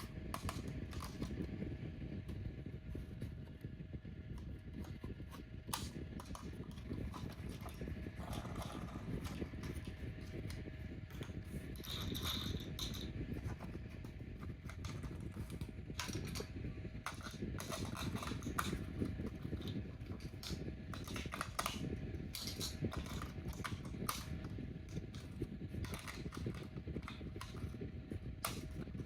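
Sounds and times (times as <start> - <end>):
faint motor whine: 0.0 - 29.0
toy gears rattling: 11.1 - 13.2, 14.1 - 27.7.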